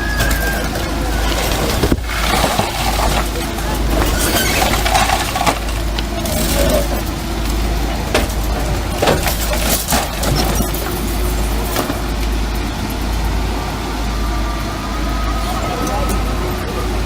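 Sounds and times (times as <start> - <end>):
cracks of material breaking: 0.0 - 7.1, 8.1 - 12.2
diesel engine running: 0.0 - 17.0.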